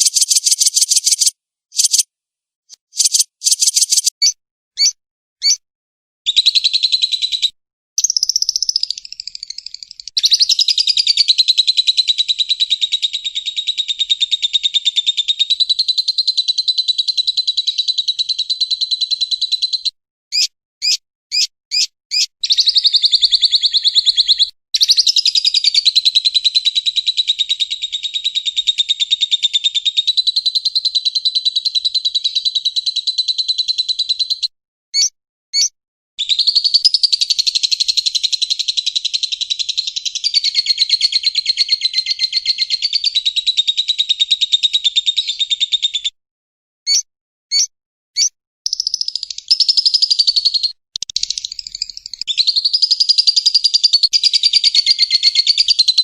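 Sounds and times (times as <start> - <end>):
lovebird chattering: 0.0 - 2.0, 2.7 - 5.6, 8.0 - 11.0, 46.9 - 55.8
lovebird sharp chirps: 0.0 - 2.0, 2.7 - 5.6, 6.3 - 11.2, 19.0 - 25.7, 35.0 - 38.0, 46.9 - 55.9.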